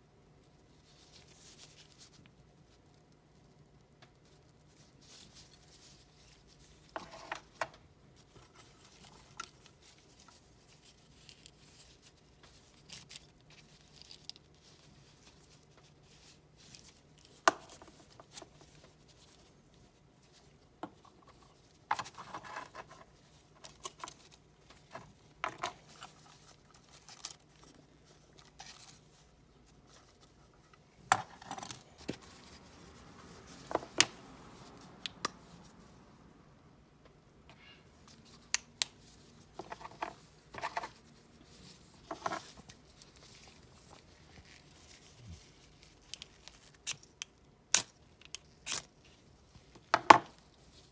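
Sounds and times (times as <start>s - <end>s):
small objects clicking and scraping: 8.6s - 18.8s.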